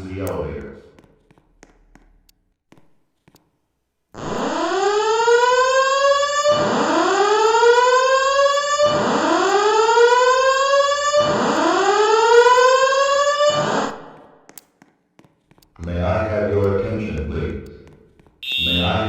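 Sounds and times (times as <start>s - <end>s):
whooping evacuation alarm tone: 4.2s - 14.1s, 18.4s - 19.0s.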